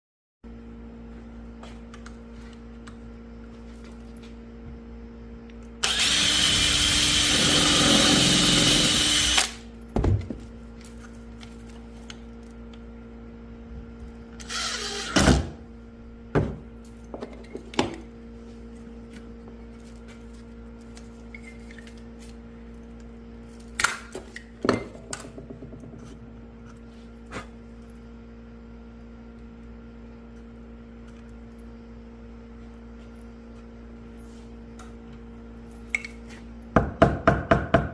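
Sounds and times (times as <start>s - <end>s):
steady low hum: 0.4s - 37.9s
power tool running: 5.8s - 9.7s, 14.4s - 15.6s.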